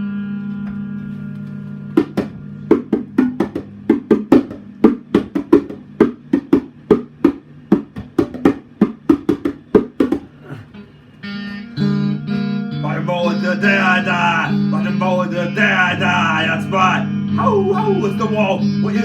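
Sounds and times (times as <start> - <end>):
guitar chord ringing: 0.0 - 19.0
drum strikes: 1.9 - 10.5.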